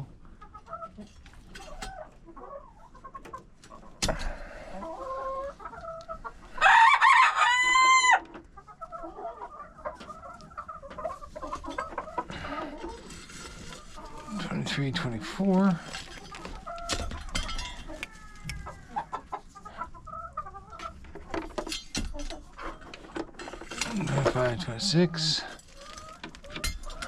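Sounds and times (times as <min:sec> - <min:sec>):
chickens clucking: 0:00.0 - 0:27.0
rooster crowing: 0:06.6 - 0:08.2.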